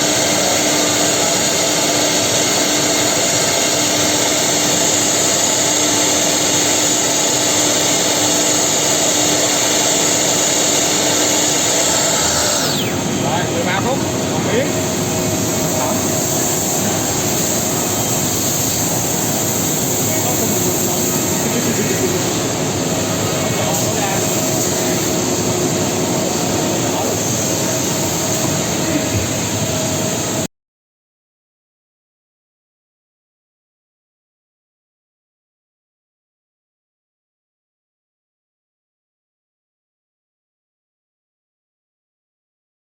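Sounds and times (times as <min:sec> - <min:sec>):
router milling wood: 0:00.0 - 0:14.6
wood cutting rush: 0:00.0 - 0:14.6
steady hum: 0:00.0 - 0:30.5.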